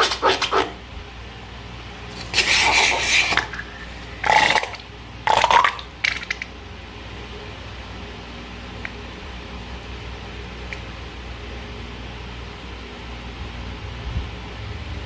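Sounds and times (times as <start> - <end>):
slime and balloon rubbing: 0.0 - 0.8, 2.2 - 4.8.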